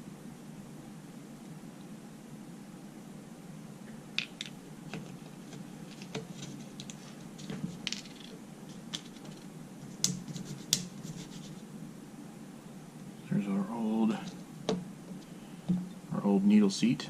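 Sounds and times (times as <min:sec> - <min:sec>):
small metal parts clicking: 0:05.9 - 0:09.5.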